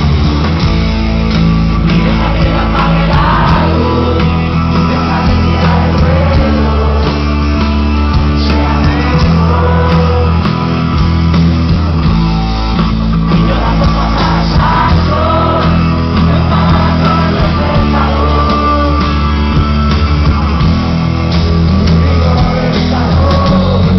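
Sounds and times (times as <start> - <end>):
live rock band playing: 0.0 - 23.9
person singing: 1.9 - 7.4, 8.3 - 10.5, 13.3 - 19.5, 21.7 - 23.9.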